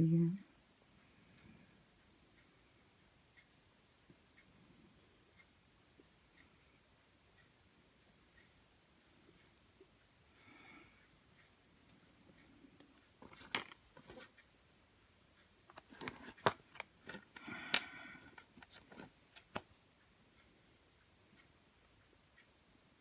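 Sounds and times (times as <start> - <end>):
plastic clicks and taps: 15.7 - 19.7.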